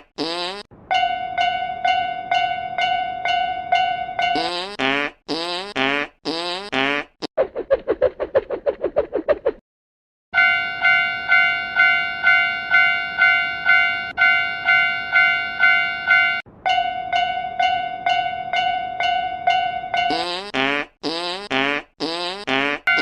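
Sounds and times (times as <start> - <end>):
railroad crossing bell ringing: 0.9 - 4.4, 10.4 - 20.1.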